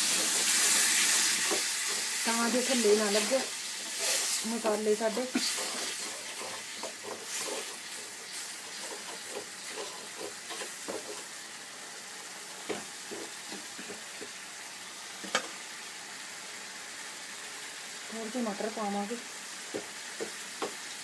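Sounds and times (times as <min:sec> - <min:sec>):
spoon scraping a pan: 0:00.0 - 0:11.4
spices sizzling in a pan: 0:00.0 - 0:21.0.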